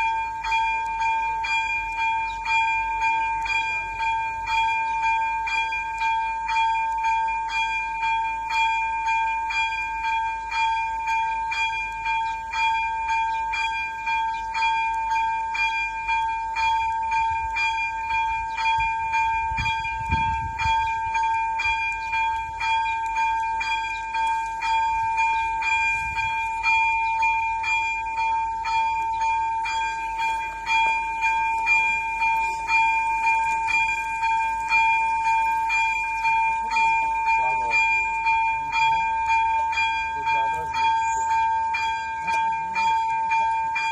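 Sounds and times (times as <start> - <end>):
electronic level-crossing bell ringing: 0.0 - 43.9.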